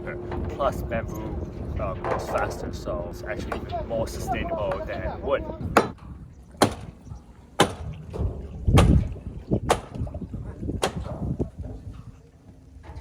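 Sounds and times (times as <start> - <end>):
low rumble: 0.0 - 12.2
hammer striking bamboo post: 5.8 - 6.0, 6.6 - 6.9, 7.6 - 7.9, 9.7 - 10.0, 10.8 - 11.2.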